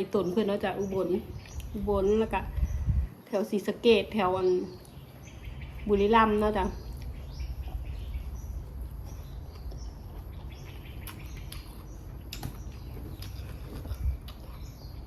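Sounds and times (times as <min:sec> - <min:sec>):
small birds chirping: 0:00.0 - 0:15.0
steady low rumble: 0:00.0 - 0:15.0.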